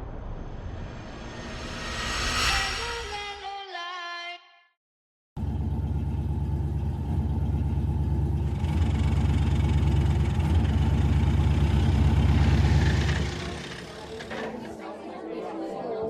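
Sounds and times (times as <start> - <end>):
car engine idling: 5.4 - 14.3.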